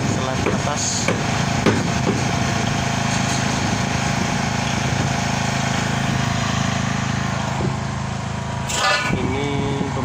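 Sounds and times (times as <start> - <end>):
excavator diesel engine humming: 0.0 - 10.0.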